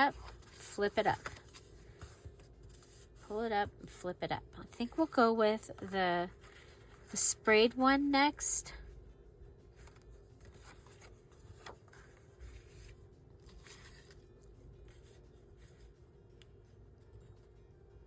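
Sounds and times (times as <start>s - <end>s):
paper sheets rustling: 0.0s - 3.3s, 9.7s - 15.9s.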